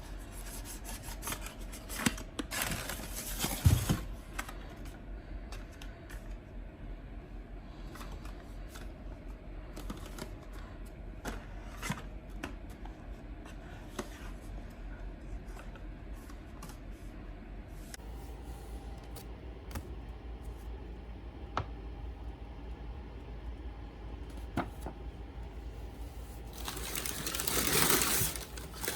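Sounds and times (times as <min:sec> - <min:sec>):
steady low hum: 0:17.8 - 0:28.9
packaging rustling: 0:18.0 - 0:28.9.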